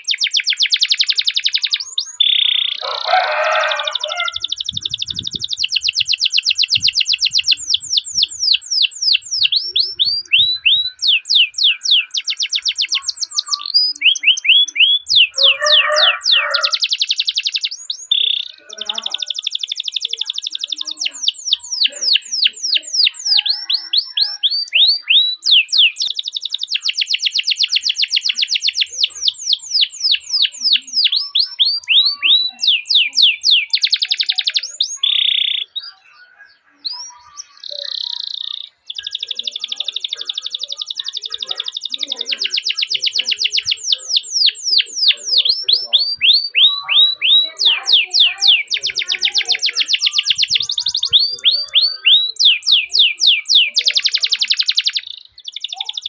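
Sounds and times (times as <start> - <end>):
canary singing: 0.0 - 56.0.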